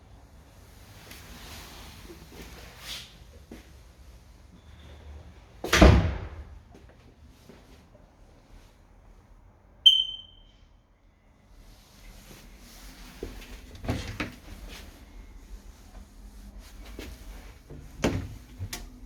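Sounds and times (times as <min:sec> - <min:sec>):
short high-pitched electronic beep: 0:09.9 - 0:10.5.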